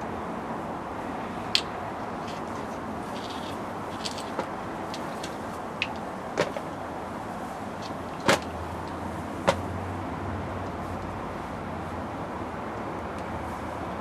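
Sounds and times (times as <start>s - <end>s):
clicks of small parts and tools: 1.6s - 6.7s.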